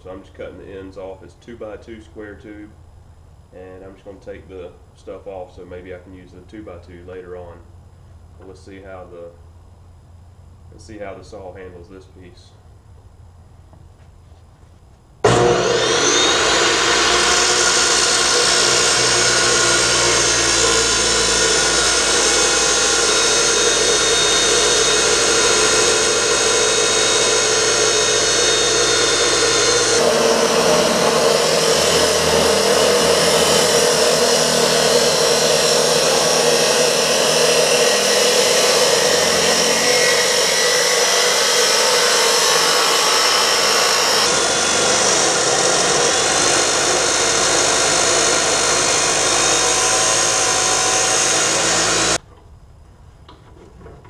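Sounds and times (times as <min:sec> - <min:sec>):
chop saw cutting steel tube: 0:15.2 - 0:52.2.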